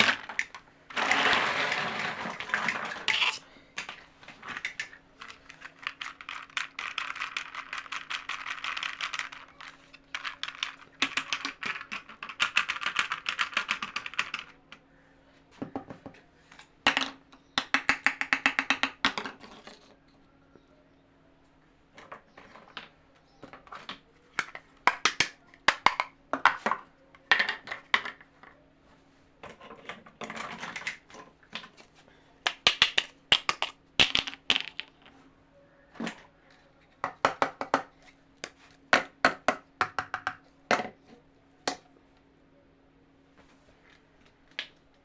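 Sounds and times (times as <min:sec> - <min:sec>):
plastic toy pieces clicking: 0:00.0 - 0:14.6, 0:16.9 - 0:19.4, 0:24.4 - 0:26.8, 0:32.4 - 0:35.1.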